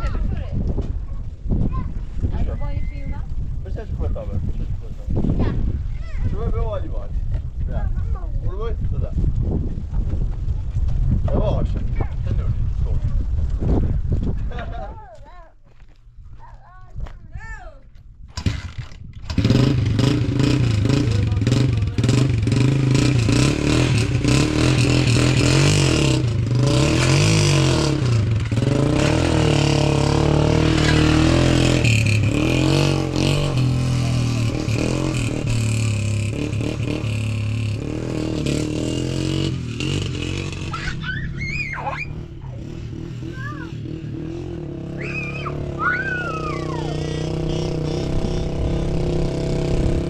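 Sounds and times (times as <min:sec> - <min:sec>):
engine revving: 0:18.4 - 0:50.0.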